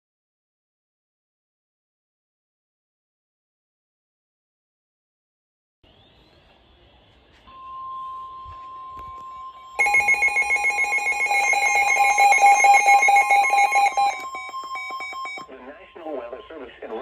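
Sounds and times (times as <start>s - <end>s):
steady warning alarm tone: 7.4s - 16.3s
loud pulsing multi-pitch alarm: 7.5s - 15.5s.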